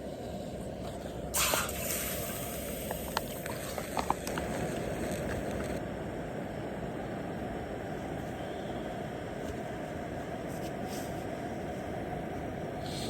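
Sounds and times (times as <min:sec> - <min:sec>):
campfire hiss: 0:00.0 - 0:13.0
fire low rumble: 0:00.0 - 0:13.0
fire popping and crackling: 0:01.3 - 0:05.8.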